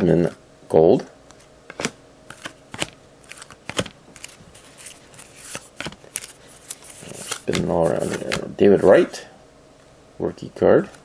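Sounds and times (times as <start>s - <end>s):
trading cards flipping and clicking: 1.3s - 8.6s.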